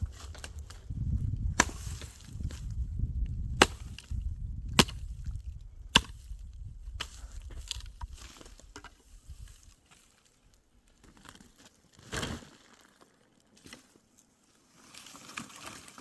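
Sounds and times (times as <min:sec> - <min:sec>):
wood chopping strikes: 0:01.5 - 0:02.7, 0:03.5 - 0:08.2.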